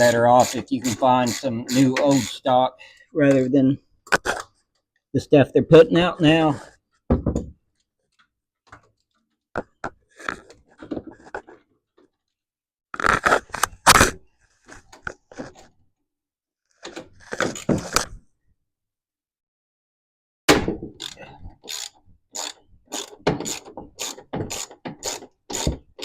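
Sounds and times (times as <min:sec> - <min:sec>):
socket ratchet clicking: 0:21.0 - 0:25.6.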